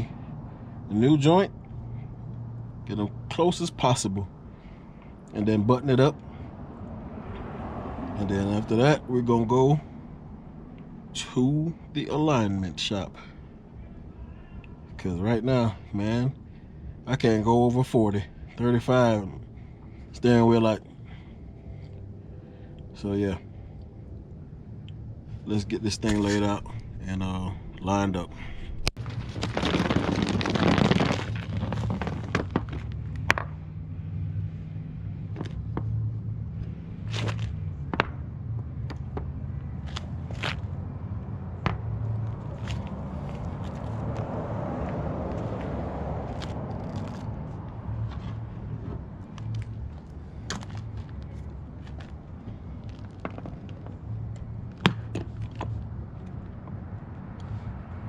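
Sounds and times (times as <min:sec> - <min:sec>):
steady low hum: 0:08.7 - 0:29.8.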